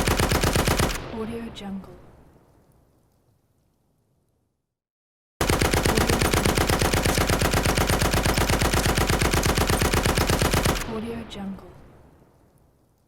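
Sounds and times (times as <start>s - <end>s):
machine gun firing: 0.0s - 1.2s, 5.4s - 11.4s.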